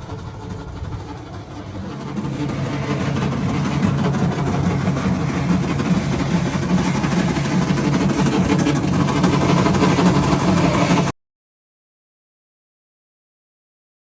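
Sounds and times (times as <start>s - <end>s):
heater and dryer motors humming: 0.0s - 11.1s.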